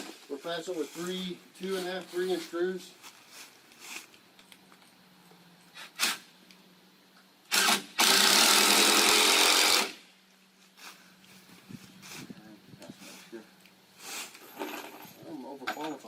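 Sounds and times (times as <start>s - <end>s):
power drill driving screw: 5.8s - 6.2s, 7.5s - 10.0s.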